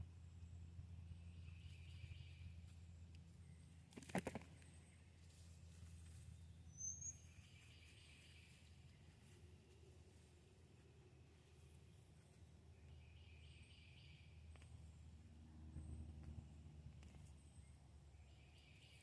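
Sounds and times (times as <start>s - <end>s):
cluster of clicks: 3.9s - 4.7s
high bird chirp: 6.6s - 8.6s.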